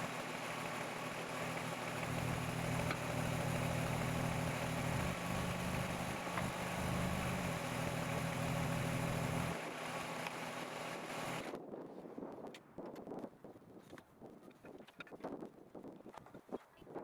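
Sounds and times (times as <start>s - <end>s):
tractor diesel engine running: 0.0s - 11.5s.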